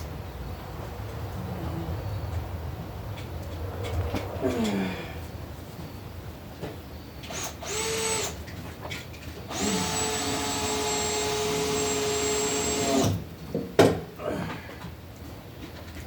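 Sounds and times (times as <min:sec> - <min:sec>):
power drill running: 0:07.3 - 0:08.4, 0:09.5 - 0:13.2.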